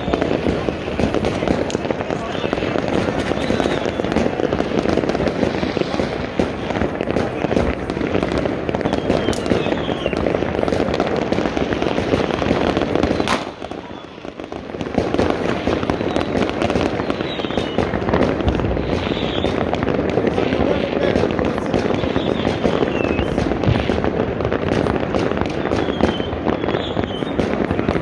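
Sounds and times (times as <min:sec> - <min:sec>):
fireworks bangs and crackles: 0:00.0 - 0:28.0.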